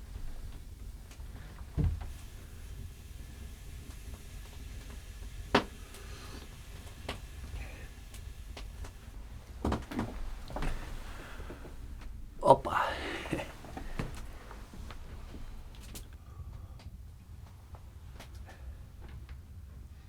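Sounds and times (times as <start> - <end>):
dull thud: 1.4 - 2.2.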